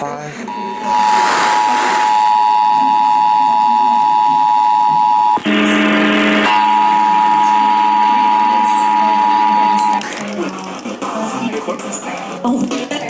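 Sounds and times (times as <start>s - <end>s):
noisy audio with low hum: 0.0s - 13.0s
two-tone alarm: 0.5s - 10.1s.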